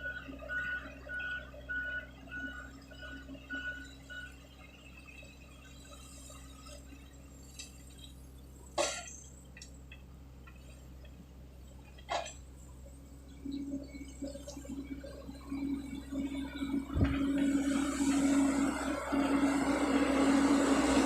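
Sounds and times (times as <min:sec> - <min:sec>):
reversing alarm beeping: 0:00.0 - 0:04.5, 0:13.4 - 0:21.0
low engine hum: 0:00.0 - 0:21.0.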